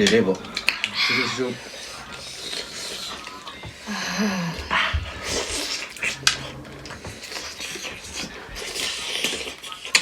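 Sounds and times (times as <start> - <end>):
wet chewing and sucking: 5.2 - 10.0.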